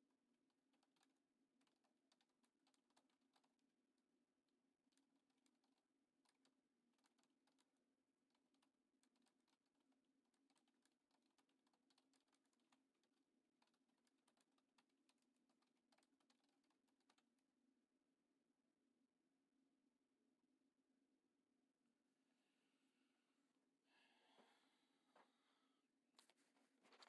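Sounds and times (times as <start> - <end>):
faint irregular clicks: 0.0 - 17.6.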